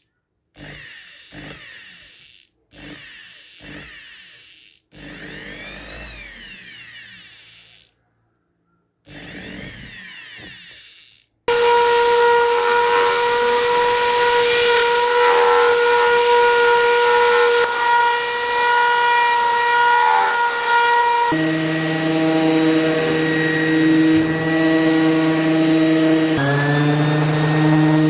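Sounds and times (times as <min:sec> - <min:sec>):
orbital sander whining: 0:11.5 - 0:28.0.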